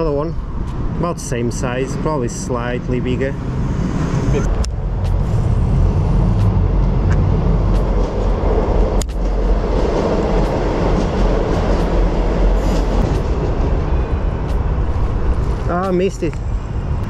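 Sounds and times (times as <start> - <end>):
train passing: 0.0 - 17.0
sharp light clicks: 9.0 - 9.3.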